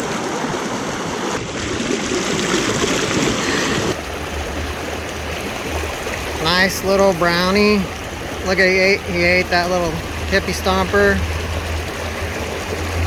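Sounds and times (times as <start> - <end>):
creek burbling over rocks: 0.0 - 13.0.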